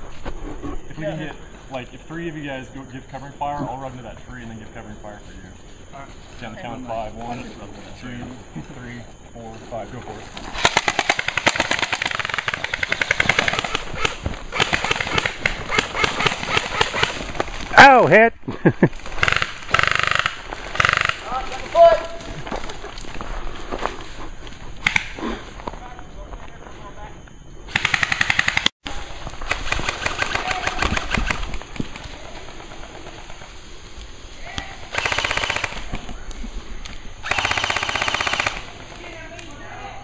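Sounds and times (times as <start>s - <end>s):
airsoft guns firing full-auto: 10.5s - 17.3s, 19.1s - 21.3s, 27.7s - 28.7s, 29.4s - 31.5s, 34.9s - 35.9s, 37.2s - 38.8s.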